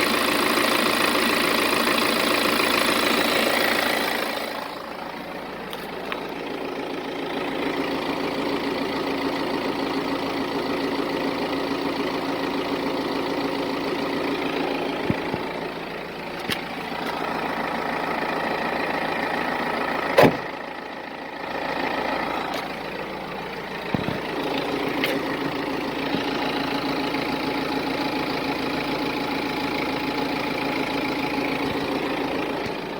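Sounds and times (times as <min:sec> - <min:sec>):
diesel engine idling: 0:00.0 - 0:32.9
engine clicks or knocks: 0:14.9 - 0:15.8, 0:23.8 - 0:26.7.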